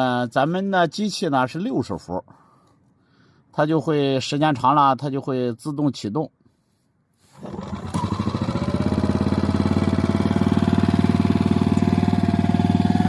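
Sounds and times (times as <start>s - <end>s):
petrol generator running: 7.3s - 13.0s.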